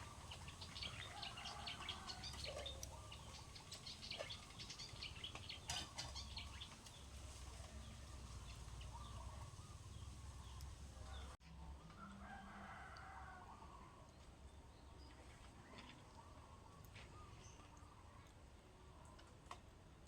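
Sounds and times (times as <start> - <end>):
small birds chirping: 0.0 - 11.4.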